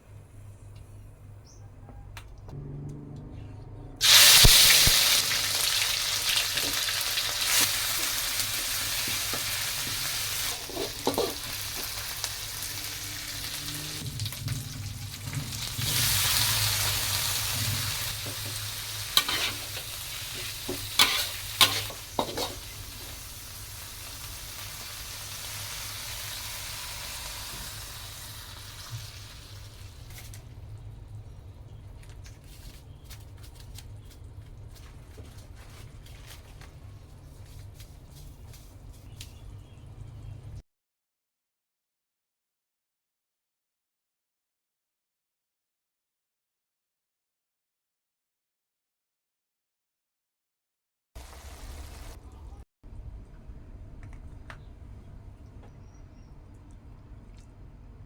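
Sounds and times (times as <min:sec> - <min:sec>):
food sizzling in hot oil: 0:04.0 - 0:30.3, 0:51.2 - 0:52.2.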